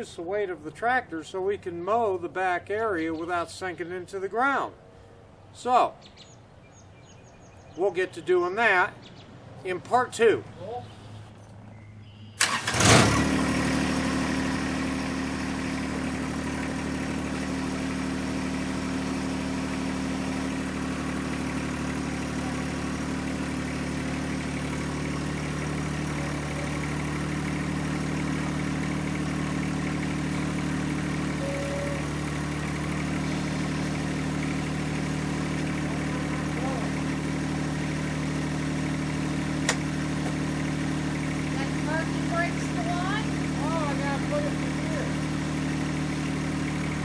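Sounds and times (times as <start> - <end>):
tractor diesel engine starting: 12.4 - 47.0
tractor engine idling: 12.4 - 47.0.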